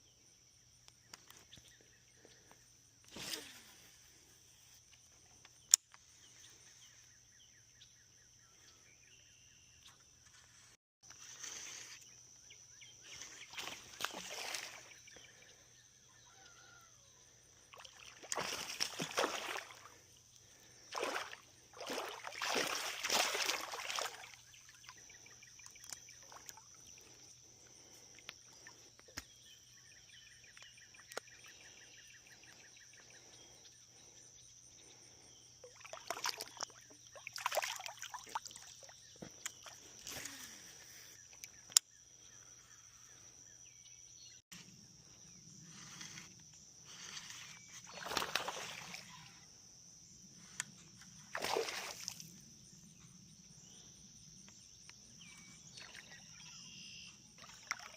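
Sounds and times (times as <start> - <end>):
water sloshing and splashing: 13.1 - 15.2, 17.7 - 29.0, 35.6 - 40.1, 47.3 - 49.3, 51.3 - 52.4, 55.7 - 57.9.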